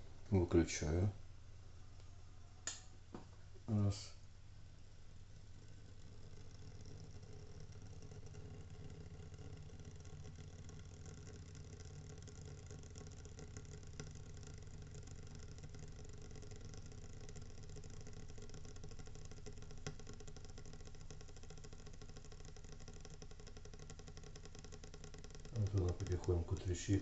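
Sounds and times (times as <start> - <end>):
heating elements crackling: 24.2 - 27.0.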